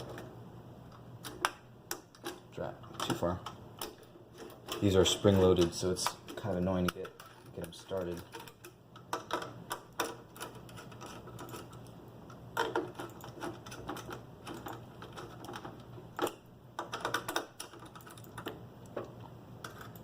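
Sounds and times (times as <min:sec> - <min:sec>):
screwdriver clicks and metal scrapes: 0:03.0 - 0:11.9.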